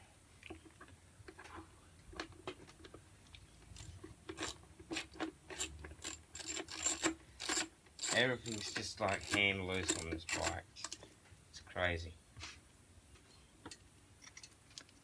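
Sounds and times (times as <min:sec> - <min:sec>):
ratchet wrench clicking: 0:03.8 - 0:11.0.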